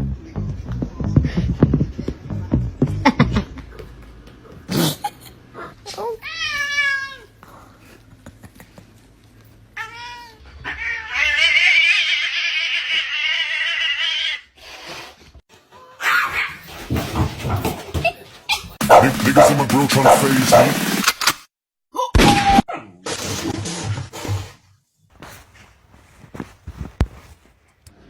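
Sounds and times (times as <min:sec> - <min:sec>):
cat meowing: 0:09.8 - 0:14.4.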